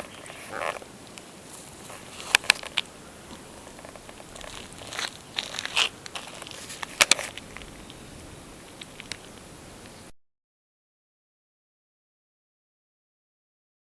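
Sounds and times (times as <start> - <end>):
cat crunching dry food: 0.0 - 9.6.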